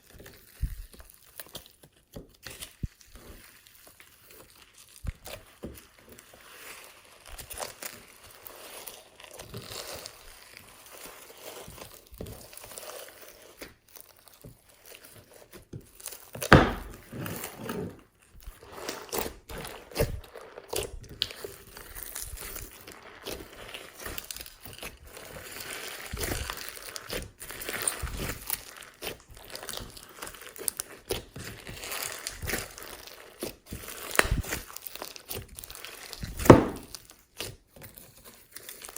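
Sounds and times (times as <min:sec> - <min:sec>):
slime squished by hand: 0:19.1 - 0:37.5.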